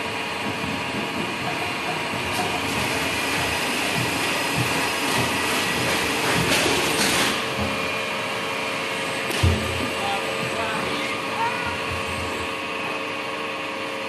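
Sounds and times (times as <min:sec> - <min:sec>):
lathe machine whirring: 0:00.0 - 0:14.0.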